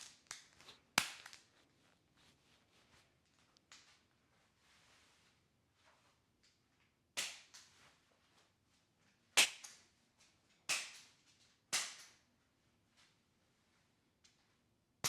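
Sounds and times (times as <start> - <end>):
sharp snapping smacks: 9.4 - 9.8, 10.7 - 11.0.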